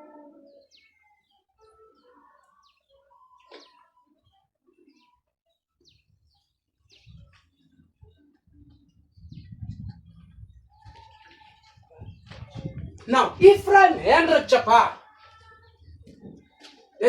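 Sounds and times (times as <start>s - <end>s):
faint bird chirps: 0.0s - 12.2s.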